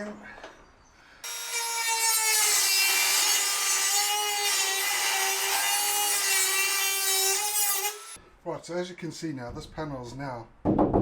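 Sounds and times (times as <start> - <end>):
power tool whining on metal: 1.2 - 8.2.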